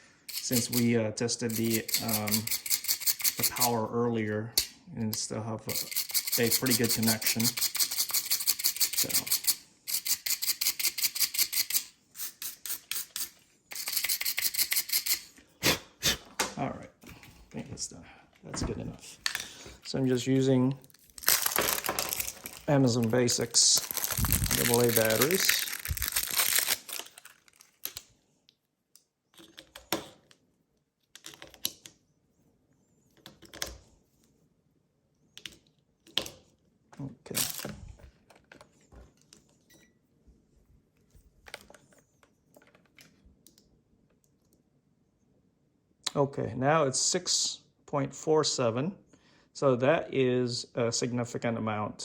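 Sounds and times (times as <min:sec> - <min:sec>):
wire brush scrubbing metal: 0:00.3 - 0:03.7
batteries clicking into holder: 0:21.2 - 0:28.1.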